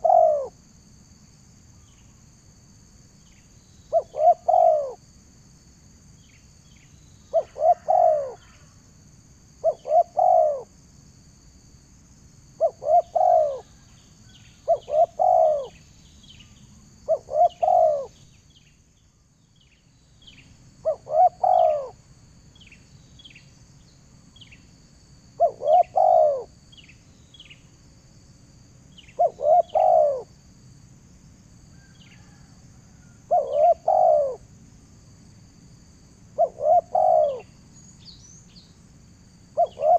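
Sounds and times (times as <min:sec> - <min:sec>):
high insect-like whine: 0:00.0 - 0:39.9
small birds chirping: 0:12.6 - 0:24.7, 0:25.4 - 0:27.7, 0:28.9 - 0:30.3, 0:36.4 - 0:38.8, 0:39.6 - 0:39.9.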